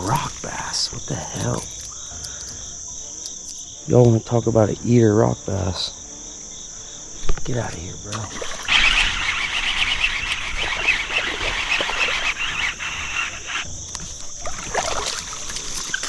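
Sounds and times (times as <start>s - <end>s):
crickets droning: 0.0s - 16.0s
water splashing and rushing: 7.9s - 16.0s.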